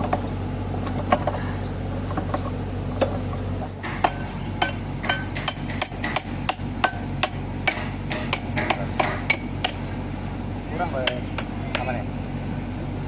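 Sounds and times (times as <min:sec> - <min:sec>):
steady low hum: 0:00.0 - 0:13.0
hammer clanking on steel: 0:03.8 - 0:09.9.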